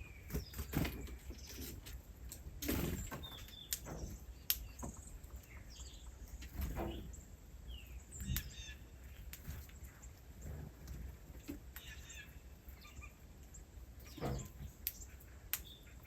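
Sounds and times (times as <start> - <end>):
small birds chirping: 0.0 - 16.0
sharp clicks: 3.4 - 4.9.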